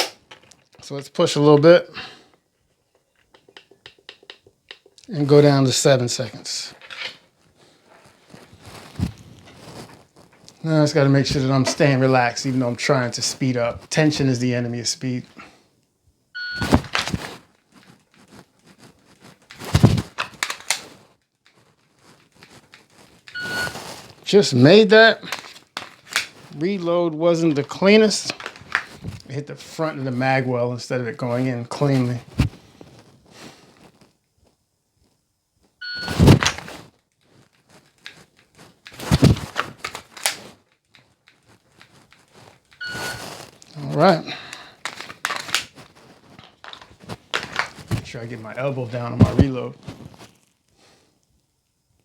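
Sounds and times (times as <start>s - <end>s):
pistol drawn from holster: 0.0s - 0.5s, 16.6s - 17.4s, 19.4s - 21.0s, 25.3s - 26.5s, 36.0s - 36.8s, 38.8s - 40.6s, 44.8s - 48.1s
magazine reload clatter: 20.1s - 20.9s, 39.5s - 40.4s.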